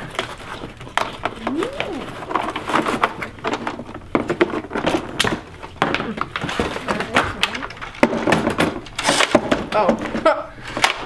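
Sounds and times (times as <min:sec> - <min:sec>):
person humming: 0:01.4 - 0:02.2.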